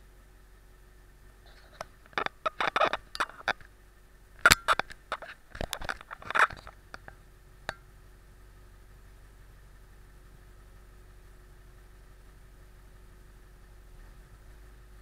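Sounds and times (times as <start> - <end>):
faint steady hum: 0.0 - 15.0
clicks knocks and scraping: 1.4 - 3.7, 4.4 - 7.2.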